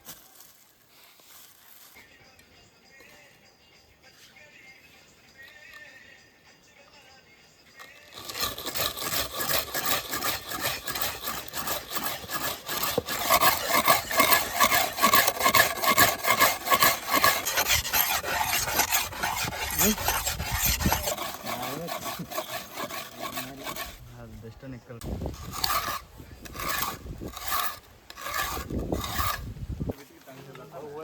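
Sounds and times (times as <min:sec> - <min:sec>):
hand tool rasping: 0:07.8 - 0:24.2, 0:25.0 - 0:29.5.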